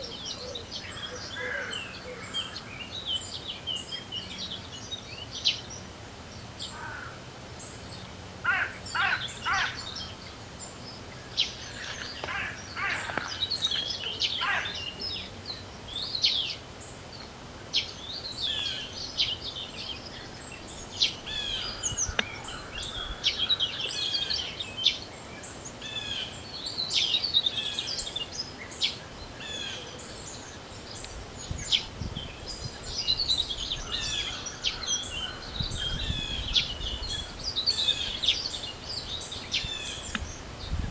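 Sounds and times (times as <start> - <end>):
songbirds singing: 0.0 - 40.9
wind hiss: 15.6 - 24.1, 30.2 - 40.9.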